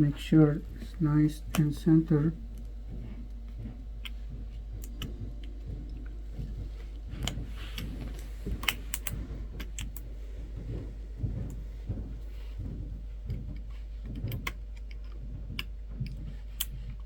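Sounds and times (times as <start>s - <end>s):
low steady hum: 0.0s - 17.0s
small parts clicking and tapping: 3.5s - 10.1s, 13.3s - 17.0s.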